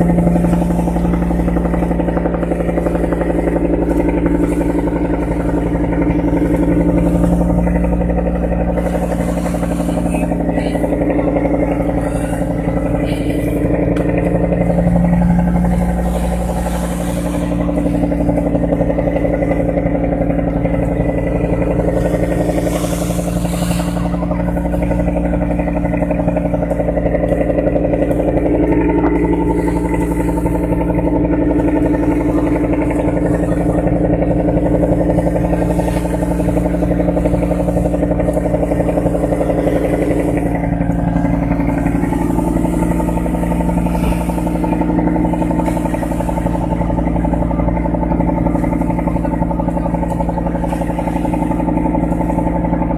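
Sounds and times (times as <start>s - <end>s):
boat engine droning: 0.0s - 52.9s.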